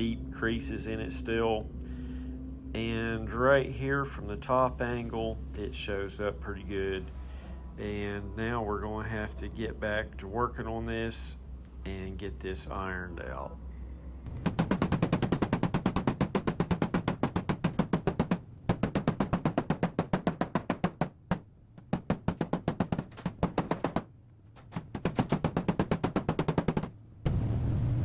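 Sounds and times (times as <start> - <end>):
hammer tapping on car door: 14.3 - 27.0.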